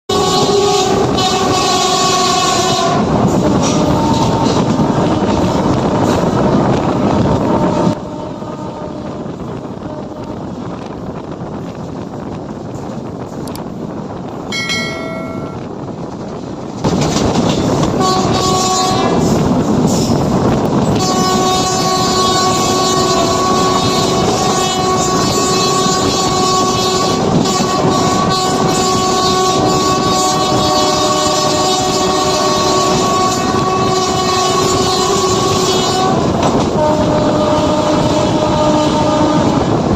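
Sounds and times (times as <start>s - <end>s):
train horn: 0.1s - 6.2s, 6.8s - 10.9s, 17.8s - 19.9s, 20.7s - 39.9s
train wheels rumbling and clattering: 0.1s - 39.9s.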